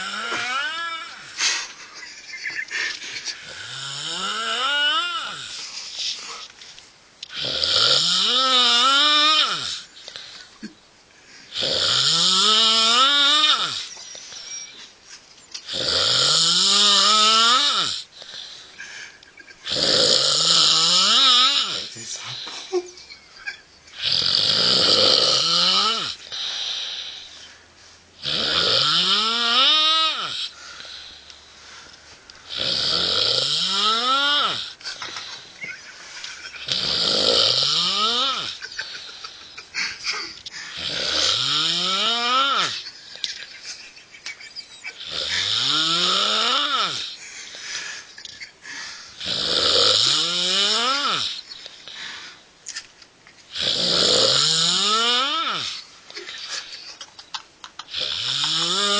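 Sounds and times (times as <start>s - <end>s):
person snoring: 0.0s - 1.8s, 3.3s - 6.4s, 7.3s - 10.4s, 11.5s - 13.9s, 15.7s - 18.6s, 19.6s - 22.7s, 24.0s - 27.4s, 28.2s - 31.3s, 32.4s - 35.2s, 36.6s - 42.8s, 44.9s - 47.6s, 48.7s - 52.3s, 53.5s - 56.7s, 57.8s - 58.9s.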